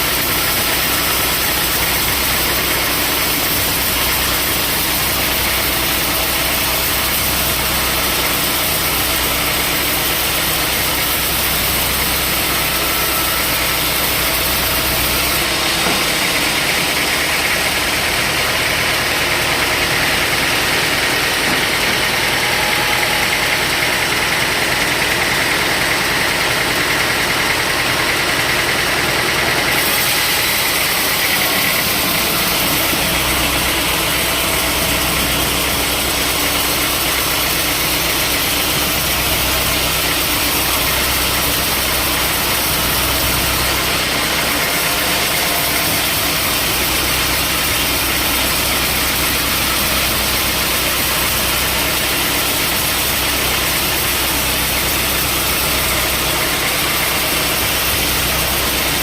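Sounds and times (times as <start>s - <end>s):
deep machinery hum: 0.0s - 59.0s
engine drone: 0.0s - 59.0s
saw rushing noise: 28.0s - 59.0s.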